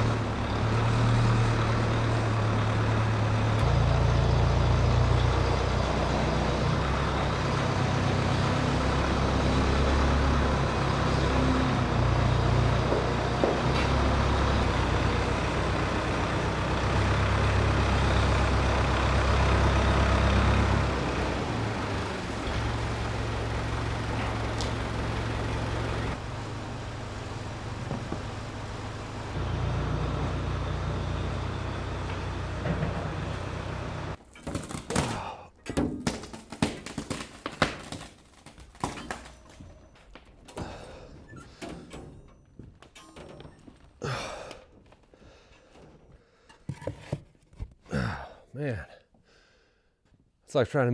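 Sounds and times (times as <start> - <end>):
vehicle engine low rumble: 0.0 - 34.2.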